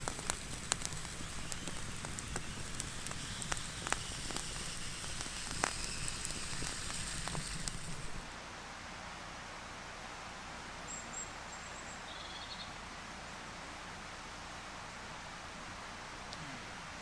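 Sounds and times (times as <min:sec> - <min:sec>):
campfire crackling and popping: 0:00.0 - 0:08.4.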